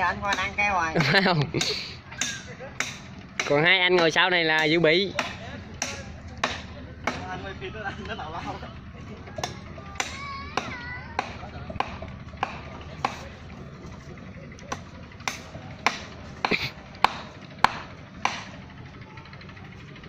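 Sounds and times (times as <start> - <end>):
hand tool striking hard surface: 0.2 - 7.5, 9.4 - 13.3, 14.7 - 18.6.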